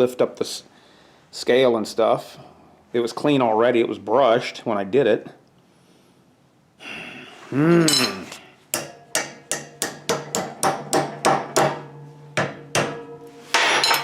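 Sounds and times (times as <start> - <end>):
hammer striking steel on anvil: 8.7 - 14.0.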